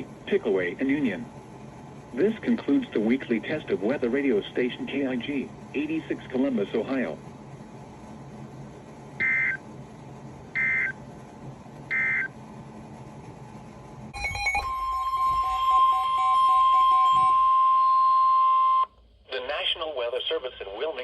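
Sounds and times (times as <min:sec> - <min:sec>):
beeping: 0:09.2 - 0:09.6, 0:10.5 - 0:11.0, 0:11.9 - 0:12.4, 0:14.2 - 0:18.9
loud single-pitch alarm tone: 0:14.2 - 0:18.9.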